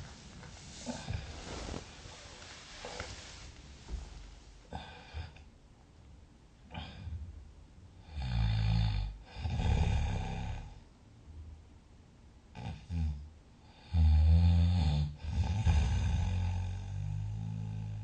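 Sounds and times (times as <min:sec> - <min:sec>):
noisy breathing: 0:00.0 - 0:03.6
person snoring loudly: 0:08.1 - 0:10.8, 0:13.8 - 0:18.0.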